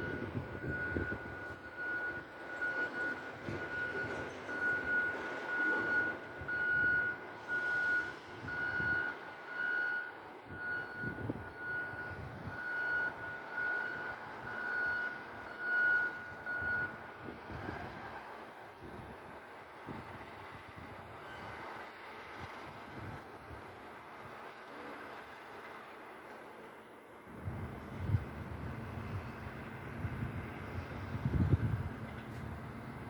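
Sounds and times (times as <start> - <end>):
low rumbling noise: 27.3 - 33.0.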